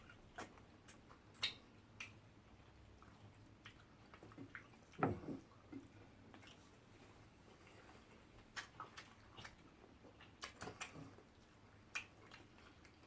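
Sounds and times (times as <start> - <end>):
wet eating mouth sounds: 7.4 - 13.0.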